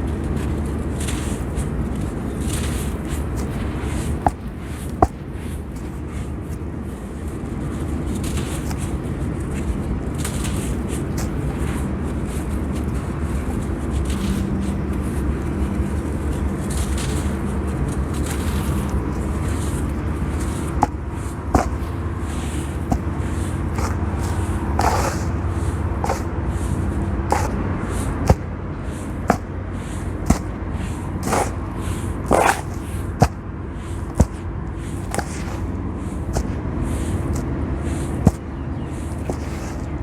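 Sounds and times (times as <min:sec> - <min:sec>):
steady low hum: 0:00.0 - 0:40.0
wet sand crunching and crumbling: 0:16.4 - 0:40.0.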